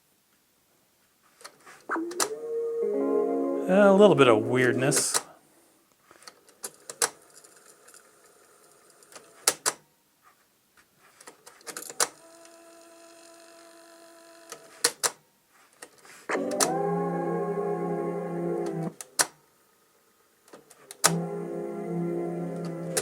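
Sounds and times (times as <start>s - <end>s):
tape music playing loudly: 1.9s - 5.2s, 16.3s - 19.0s, 21.1s - 23.0s.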